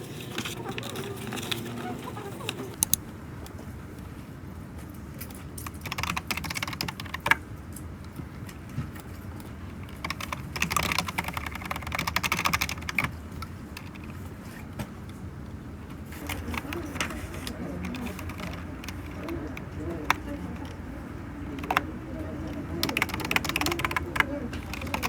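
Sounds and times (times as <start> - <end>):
computer keyboard typing: 5.6 - 7.4, 9.3 - 14.3, 16.2 - 25.0.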